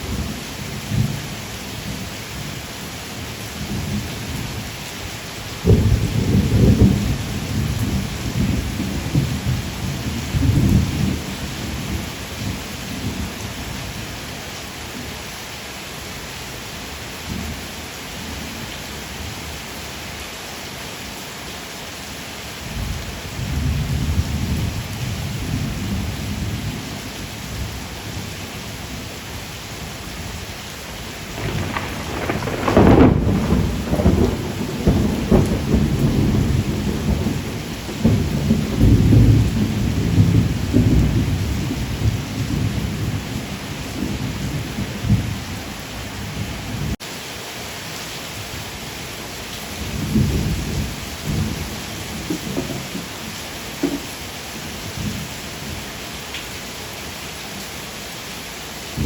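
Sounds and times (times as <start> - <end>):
steady rain: 0.0 - 59.0
thunder rumbling: 5.6 - 13.3, 31.2 - 47.0, 49.8 - 54.1
thunder crack: 31.3 - 42.6.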